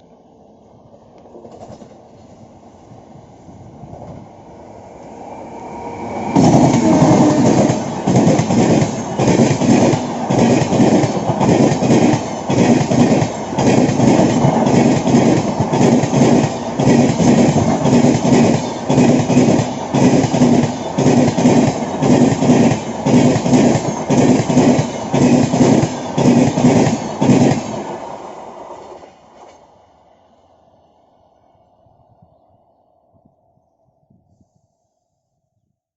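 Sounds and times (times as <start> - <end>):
train wheels clattering on track: 1.2 - 2.4, 6.2 - 29.7.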